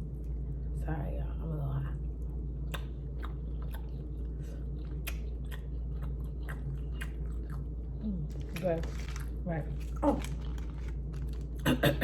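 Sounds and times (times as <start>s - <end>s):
person chewing food: 2.5s - 11.8s.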